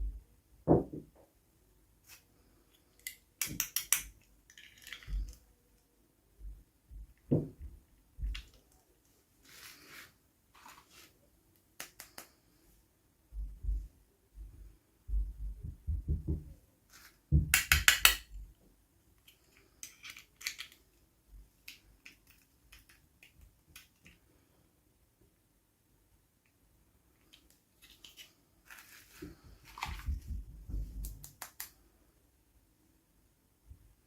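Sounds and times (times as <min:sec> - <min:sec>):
plastic toy pieces clicking: 0:03.0 - 0:05.4, 0:17.6 - 0:18.3, 0:19.3 - 0:21.0.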